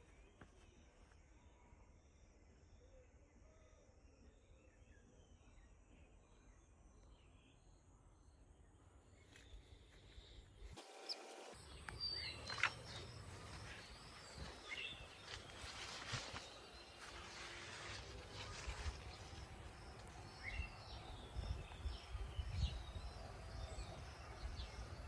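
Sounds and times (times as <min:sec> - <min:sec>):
small birds chirping: 0:08.9 - 0:25.0.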